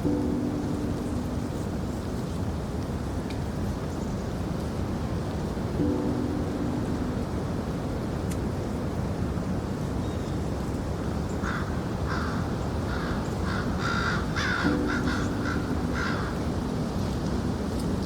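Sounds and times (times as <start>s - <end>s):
low background hiss: 0.0s - 18.0s
crow cawing: 11.4s - 16.5s.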